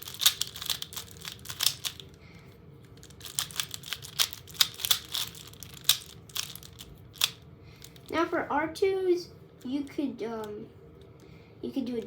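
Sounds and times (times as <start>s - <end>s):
puzzle cube clicking as turned: 0.0s - 2.1s, 3.0s - 7.4s.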